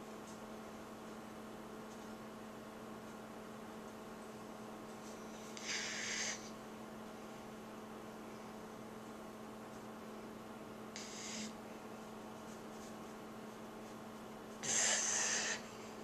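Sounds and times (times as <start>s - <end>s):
steady low hum: 0.0s - 16.0s
dog snoring breaths: 5.6s - 6.5s, 14.6s - 15.8s.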